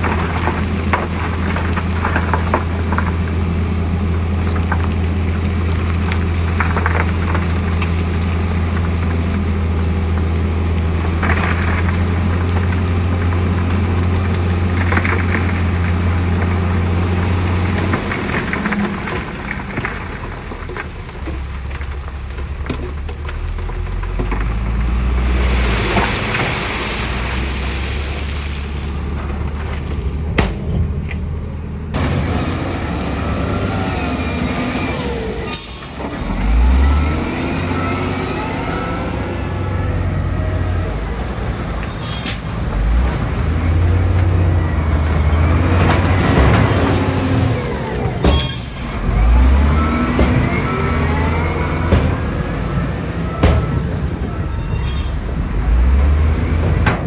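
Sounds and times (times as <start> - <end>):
heavy diesel machinery rumbling: 0.0 - 57.0
clanks and knocks: 39.9 - 57.0.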